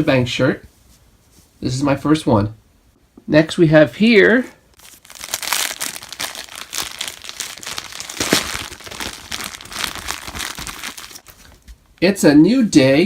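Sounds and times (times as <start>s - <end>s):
packaging crinkling: 4.8s - 11.8s.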